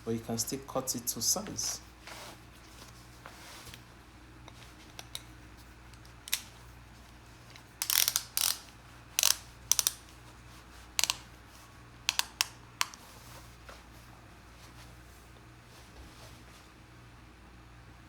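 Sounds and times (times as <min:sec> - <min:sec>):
ratchet belt buckle clicking: 0:05.9 - 0:06.5, 0:07.5 - 0:10.2, 0:11.0 - 0:11.3, 0:12.0 - 0:13.0.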